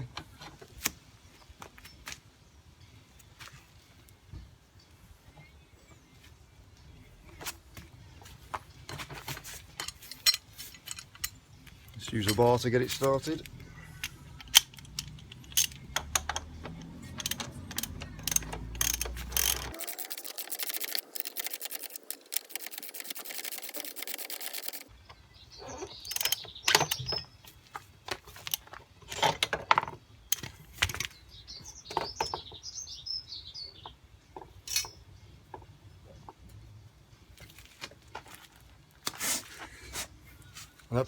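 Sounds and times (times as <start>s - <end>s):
ratchet rapid clicking: 17.2s - 24.9s.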